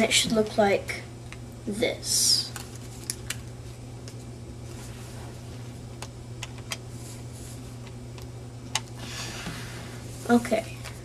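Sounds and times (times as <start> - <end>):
steady low hum: 0.0 - 11.0
paper clicks and crackles: 2.5 - 3.5.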